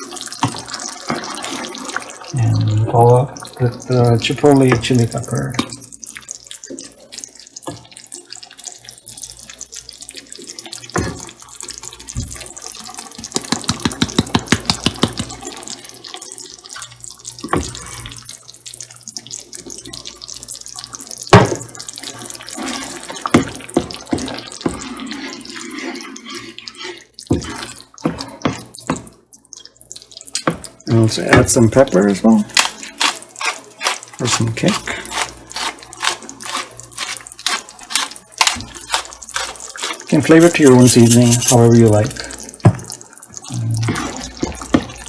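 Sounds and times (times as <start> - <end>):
sauce bubbling in a pan: 0.0 - 45.0
spoon stirring and scraping: 13.2 - 15.7, 21.9 - 29.1, 31.3 - 43.0, 43.7 - 45.0
quick run of taps: 13.3 - 15.4.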